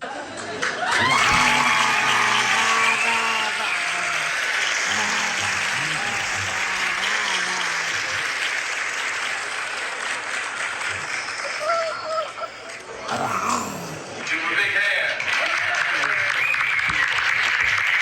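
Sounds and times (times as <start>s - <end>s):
crowd applauding: 0.1s - 18.0s.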